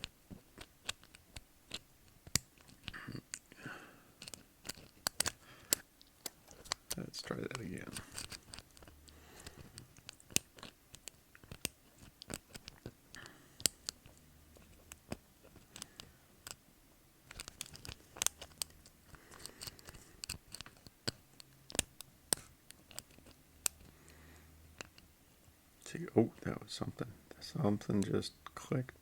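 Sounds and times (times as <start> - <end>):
lock pick clicking and scraping: 0.0 - 3.6, 4.2 - 16.6, 17.3 - 23.9, 24.7 - 25.1.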